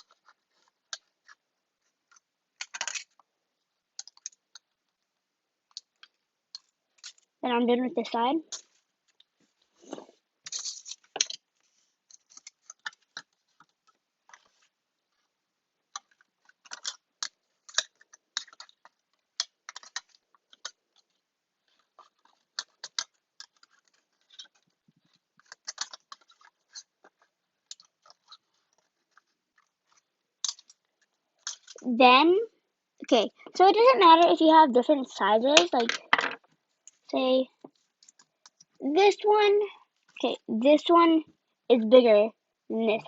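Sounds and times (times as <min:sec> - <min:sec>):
tape and paper crinkling: 0:00.0 - 0:03.3, 0:08.5 - 0:15.3, 0:15.9 - 0:31.9, 0:35.4 - 0:38.9.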